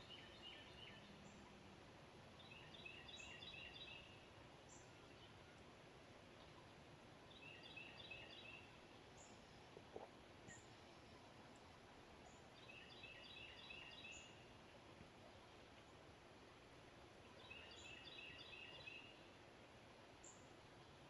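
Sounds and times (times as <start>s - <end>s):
songbird singing: 0.0s - 14.6s, 17.2s - 19.4s.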